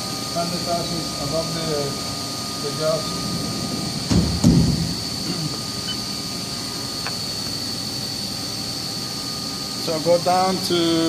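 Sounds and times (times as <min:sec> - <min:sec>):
milling machine whining: 0:00.0 - 0:11.0
dull knocks: 0:04.0 - 0:05.6.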